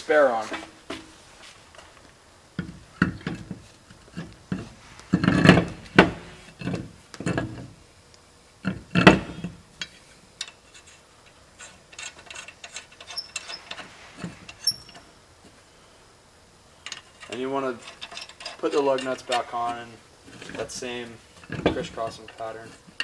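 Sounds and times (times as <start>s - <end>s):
wheel knocks and clunks: 0.3s - 1.2s, 2.6s - 7.8s, 8.6s - 10.7s, 16.8s - 23.0s.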